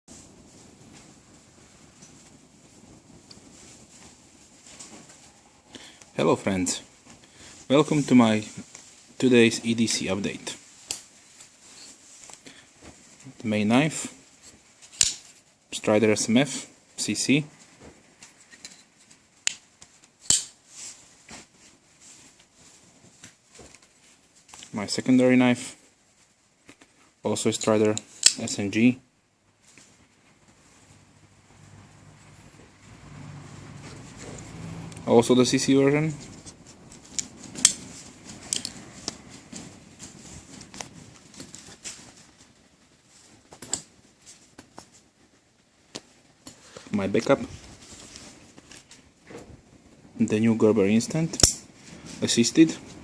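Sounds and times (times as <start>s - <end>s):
rustling: 0.1s - 53.0s
folding knife metal clicks: 20.3s - 20.5s.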